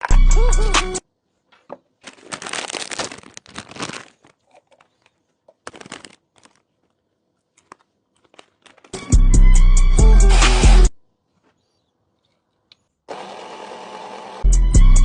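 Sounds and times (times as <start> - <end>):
crinkling and crackling: 1.4 - 9.0.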